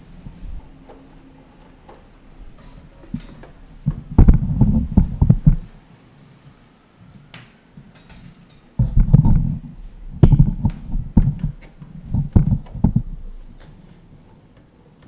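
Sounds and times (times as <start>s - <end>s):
power cord knocks and clicks: 2.4s - 5.8s, 8.8s - 13.8s.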